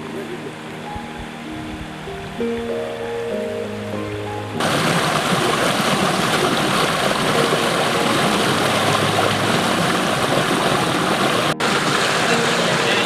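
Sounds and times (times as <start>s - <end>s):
waterfall roaring: 4.6s - 13.0s.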